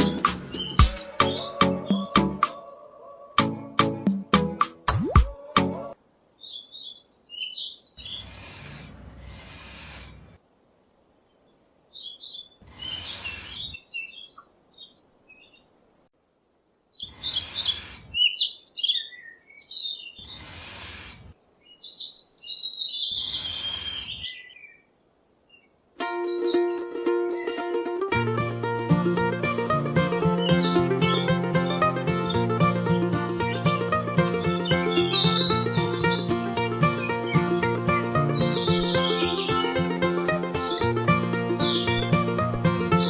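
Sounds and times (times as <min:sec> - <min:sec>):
small birds chirping: 0:00.0 - 0:03.3, 0:06.3 - 0:10.4, 0:11.2 - 0:15.8, 0:16.9 - 0:27.7, 0:30.1 - 0:39.8, 0:40.6 - 0:43.0
rasping strokes: 0:08.0 - 0:10.4, 0:12.6 - 0:13.8, 0:17.0 - 0:18.2, 0:20.2 - 0:21.3, 0:23.2 - 0:24.3.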